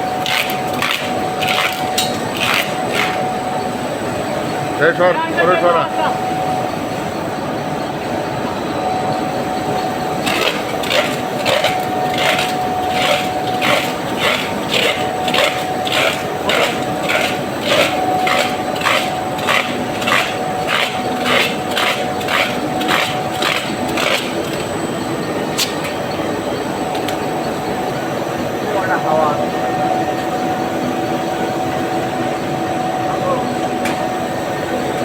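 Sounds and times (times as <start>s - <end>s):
steady hum: 0.0s - 35.0s
rasping strokes: 0.2s - 3.3s, 10.2s - 24.7s.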